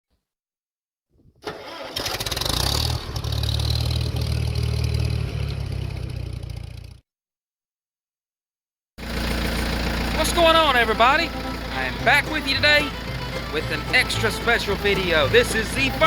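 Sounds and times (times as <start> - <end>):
tractor engine starting and running: 1.4 - 7.0, 9.0 - 16.0.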